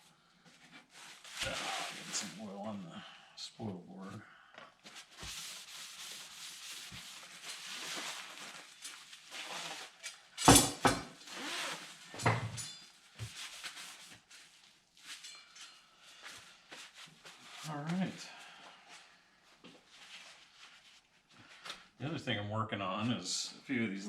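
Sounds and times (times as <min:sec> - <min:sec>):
oil being rubbed onto a board: 0:05.2 - 0:08.2.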